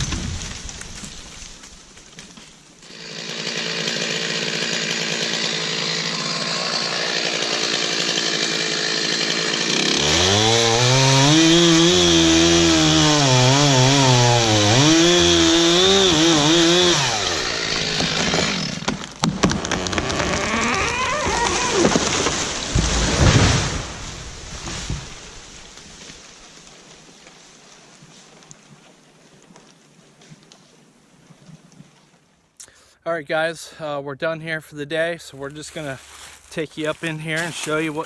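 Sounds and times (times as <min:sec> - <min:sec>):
chainsaw cutting wood: 0:02.2 - 0:26.2.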